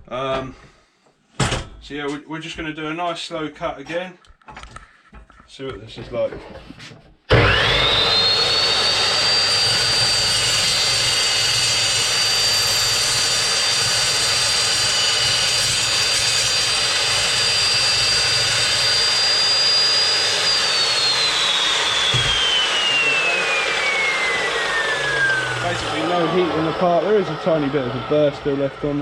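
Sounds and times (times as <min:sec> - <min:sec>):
chop saw cutting steel: 0:07.3 - 0:29.0.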